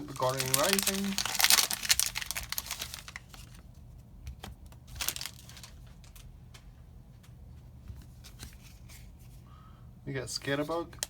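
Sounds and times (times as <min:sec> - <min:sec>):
foil wrapper rustling: 0:00.0 - 0:03.7, 0:04.4 - 0:06.3
paper cards clicking and rustling: 0:00.0 - 0:06.3.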